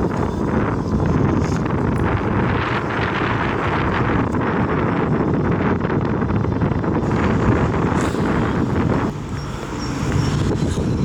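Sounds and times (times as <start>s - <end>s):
wind buffeting microphone: 0.0s - 11.0s.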